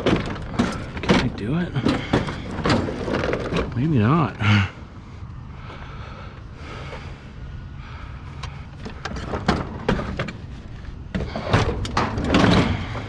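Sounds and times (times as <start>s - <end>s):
metal knocks and clanks: 0.0s - 3.8s, 11.1s - 13.0s
metal clattering and scraping: 0.0s - 3.9s, 8.8s - 13.0s
steady low hum: 0.0s - 13.0s.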